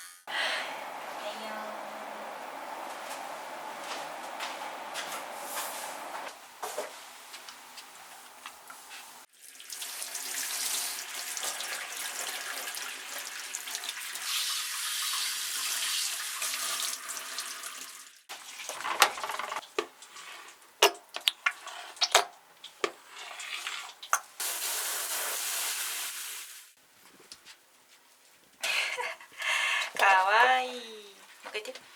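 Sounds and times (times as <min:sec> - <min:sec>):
running tap water: 0:09.3 - 0:20.6.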